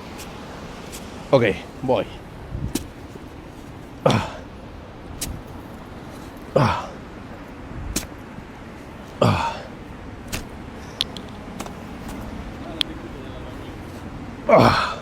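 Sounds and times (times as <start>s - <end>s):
shovel digging in sand: 0.0s - 1.2s, 2.7s - 4.3s, 5.2s - 6.5s, 7.9s - 8.2s, 10.2s - 10.6s
light clicks: 10.3s - 12.9s.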